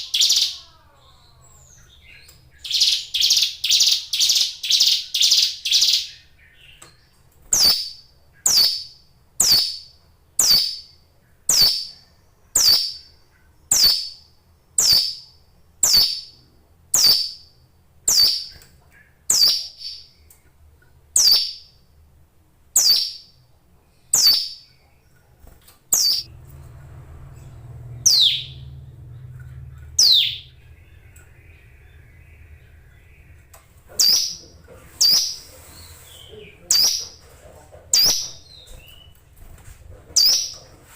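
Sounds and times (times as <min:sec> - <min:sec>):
songbird high chirps: 0:00.0 - 0:16.4, 0:17.0 - 0:17.4, 0:18.1 - 0:20.4, 0:21.2 - 0:21.8, 0:22.8 - 0:23.3, 0:24.1 - 0:25.2, 0:25.9 - 0:26.3, 0:28.0 - 0:37.2, 0:37.9 - 0:39.2.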